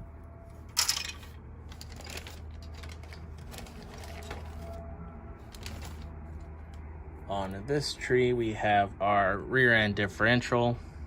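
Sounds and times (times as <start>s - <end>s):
plastic parts clicking and rattling: 0.7s - 4.8s, 5.4s - 6.5s
plastic clatter: 0.8s - 4.8s, 5.5s - 6.1s.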